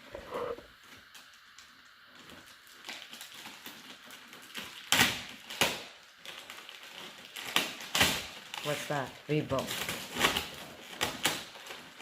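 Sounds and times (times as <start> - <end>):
wrapping paper rustling: 0.8 - 12.0
paper ripping: 2.8 - 12.0.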